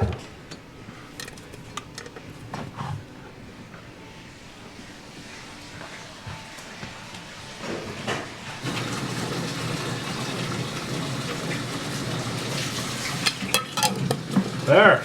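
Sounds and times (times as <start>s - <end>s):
water running from tap: 8.6s - 15.0s.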